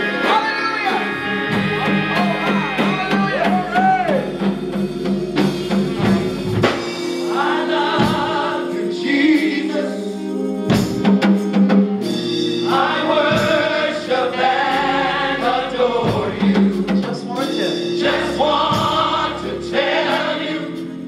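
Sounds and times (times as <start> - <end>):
drum kit: 0.0 - 9.6, 10.6 - 21.0
gospel choir singing: 0.0 - 21.0
steady bass line: 1.1 - 8.6, 11.8 - 21.0.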